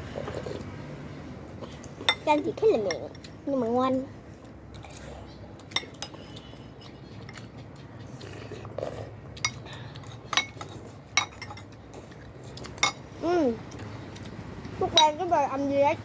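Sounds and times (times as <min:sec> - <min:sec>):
utensils clinking against bowl: 0:09.4 - 0:13.0.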